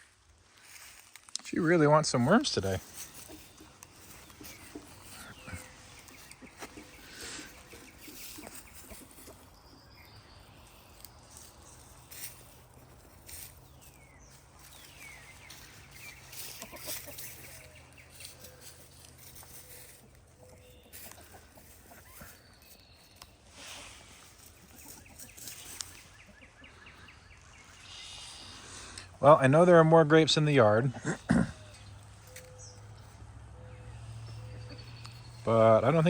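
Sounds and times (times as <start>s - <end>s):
chickens chirping: 0.6s - 36.0s
chickens clucking: 1.8s - 29.3s.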